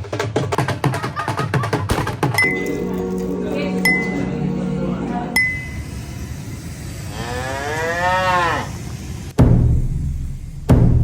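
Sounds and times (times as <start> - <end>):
music: 0.0 - 5.8, 9.4 - 11.0
cow mooing: 7.1 - 8.8
loud deep boom: 9.4 - 11.0.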